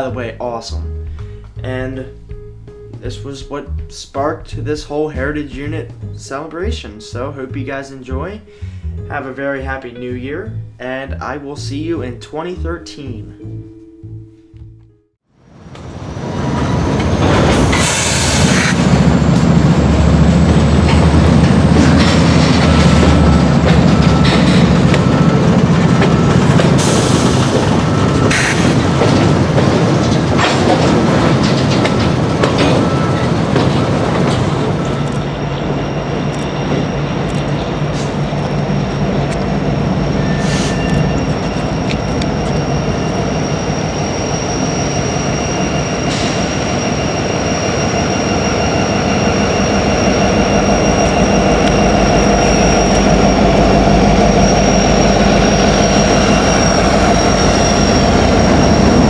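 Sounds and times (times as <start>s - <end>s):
high-pitched wheel squeal: 15.8s - 59.0s
freight train wheels clicking: 17.0s - 44.9s, 48.1s - 59.0s.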